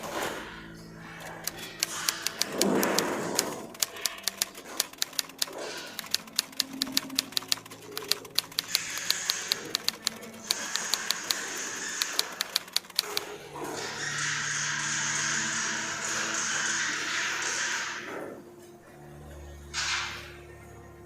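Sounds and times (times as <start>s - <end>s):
swiftlets clicking: 1.2s - 13.4s.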